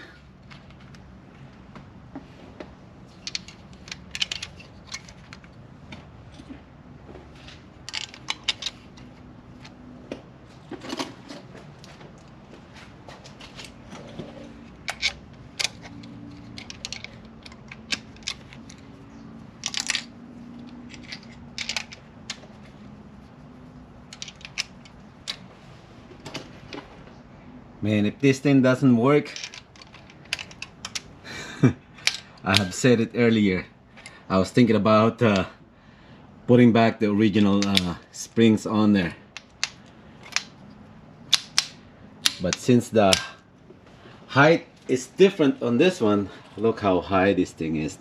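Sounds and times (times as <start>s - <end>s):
metal tools clinking: 3.1s - 5.5s, 7.8s - 9.7s, 13.6s - 22.4s, 24.0s - 25.5s, 29.2s - 31.1s, 32.0s - 32.8s, 41.3s - 43.4s.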